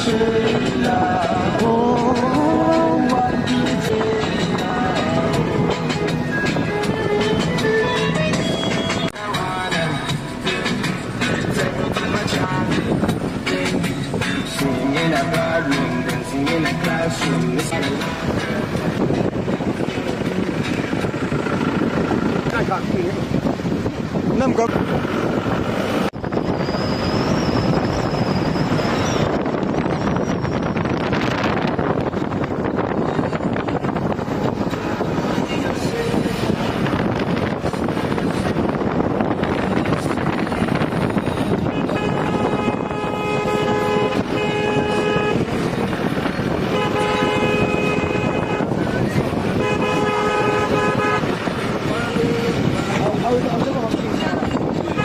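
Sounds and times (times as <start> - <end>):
moving car rumble: 0.0 - 55.0
road and engine noise: 0.0 - 55.0
wind buffeting microphone: 0.0 - 55.0
car horn honking: 41.0 - 52.8, 54.3 - 55.0.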